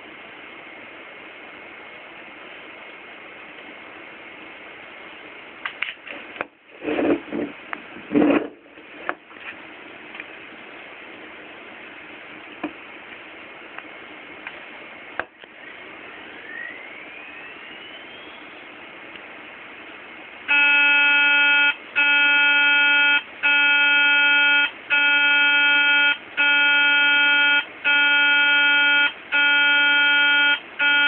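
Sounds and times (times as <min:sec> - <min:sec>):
faint rising whine: 0:13.4 - 0:20.5
loud buzzing beep: 0:20.5 - 0:31.0.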